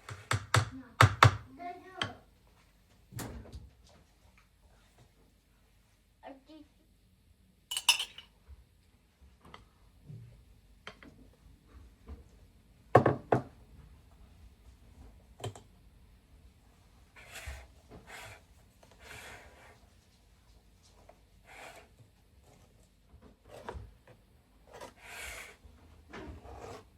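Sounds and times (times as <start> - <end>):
household objects clicking and knocking: 0.0 - 2.2.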